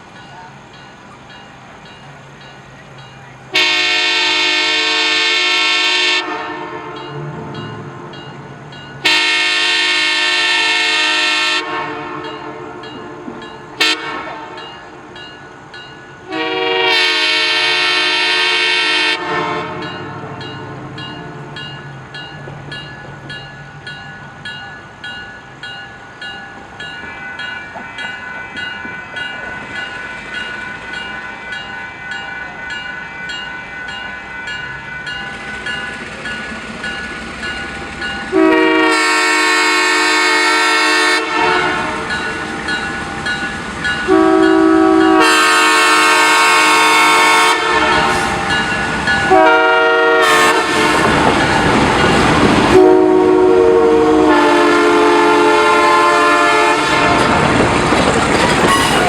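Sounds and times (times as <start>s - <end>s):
train rumbling past: 0.0s - 59.0s
locomotive air horn blasts: 3.5s - 7.1s, 9.0s - 12.8s, 13.8s - 14.6s, 16.3s - 20.3s, 38.3s - 42.1s, 44.0s - 48.4s, 49.3s - 51.2s, 52.7s - 57.4s
wheels clicking over rails: 57.1s - 59.0s.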